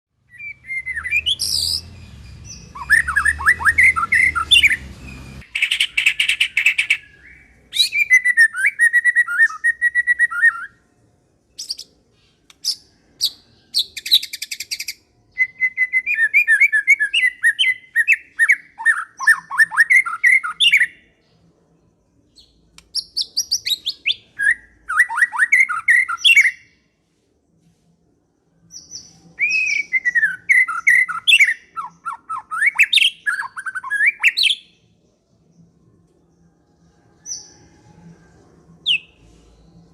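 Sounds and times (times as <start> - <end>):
songbird singing whistles and trills: 0.2 - 10.8, 11.5 - 21.4, 22.3 - 26.8, 28.6 - 34.9, 38.8 - 39.9.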